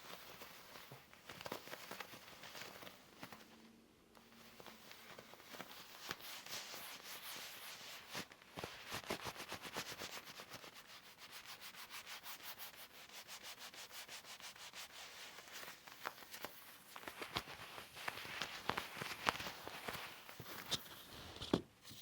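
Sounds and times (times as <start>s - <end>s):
leather gloves rubbing: 4.4s - 21.4s.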